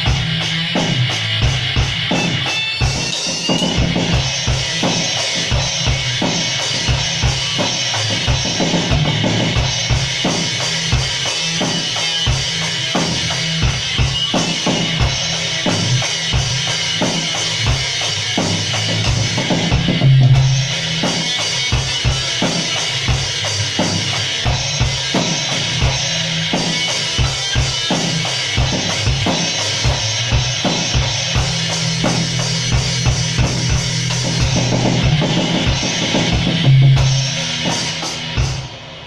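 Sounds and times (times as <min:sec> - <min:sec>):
drum kit played hard: 0:00.0 - 0:39.0.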